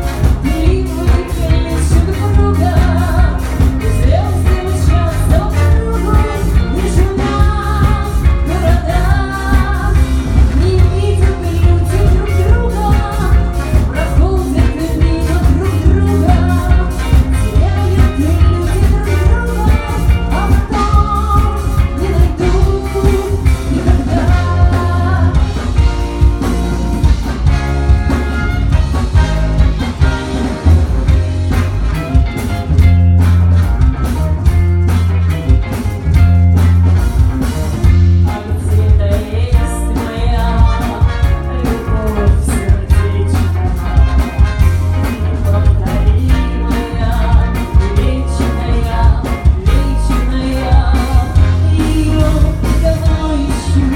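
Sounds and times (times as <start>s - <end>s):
person singing: 0.0s - 26.0s, 38.2s - 53.9s
live band playing: 0.0s - 53.9s
pulsing bass line: 0.0s - 53.9s.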